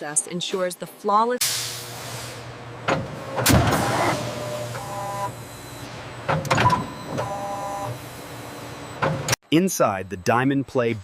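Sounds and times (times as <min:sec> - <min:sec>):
machine clunk: 0:02.8 - 0:04.8, 0:06.2 - 0:07.3.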